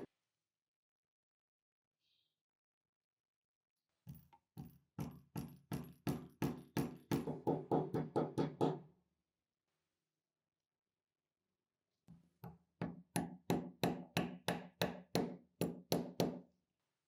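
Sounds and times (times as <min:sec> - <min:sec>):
hammer tapping on workpiece: 0:12.4 - 0:16.4.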